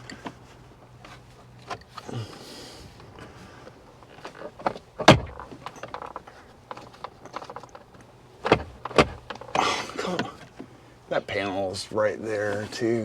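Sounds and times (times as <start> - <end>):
plastic trim clicks and knocks: 4.2 - 9.5.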